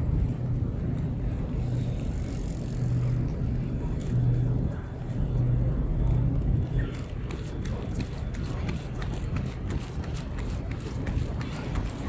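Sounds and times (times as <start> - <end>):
low motor hum: 0.0 - 12.0
rumbling background: 0.0 - 12.0.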